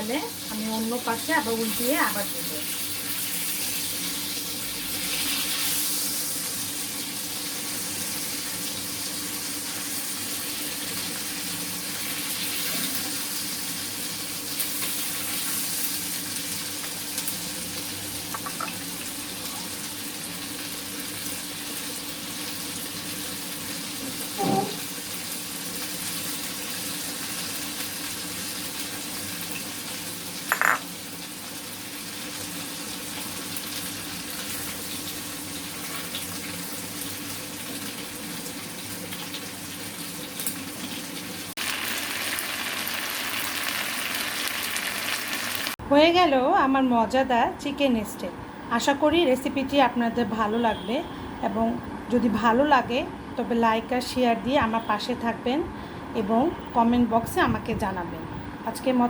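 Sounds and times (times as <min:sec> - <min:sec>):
chicken sizzling in a frying pan: 0:00.0 - 0:45.8.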